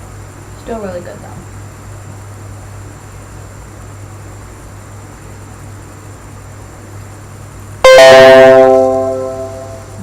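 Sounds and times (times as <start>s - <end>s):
low hum with faint hiss: 0.0s - 10.0s
plucked string chord: 7.9s - 10.0s.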